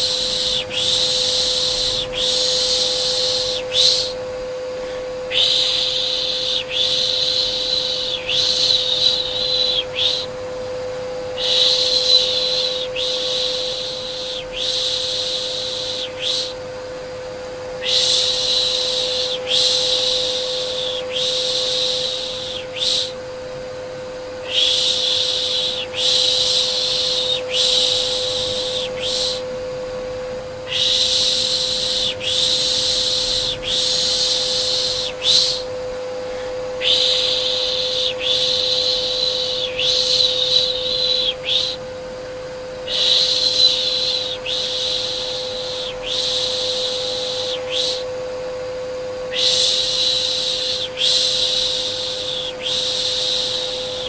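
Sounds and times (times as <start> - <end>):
vacuum cleaner humming: 0.0 - 54.0
person shushing: 4.8 - 10.4, 11.4 - 16.6, 24.4 - 29.5, 30.7 - 41.8.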